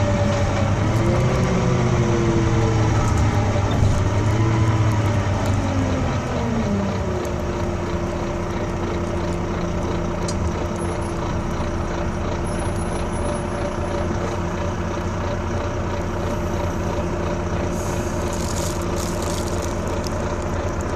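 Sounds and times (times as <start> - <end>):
bus engine rumble with whine: 0.0 - 20.9
short air hiss: 17.7 - 18.3.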